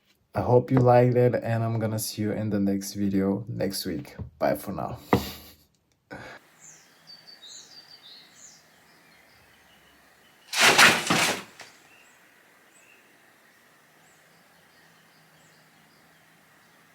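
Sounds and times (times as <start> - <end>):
faint bird chirps: 6.5 - 10.5, 11.8 - 16.9.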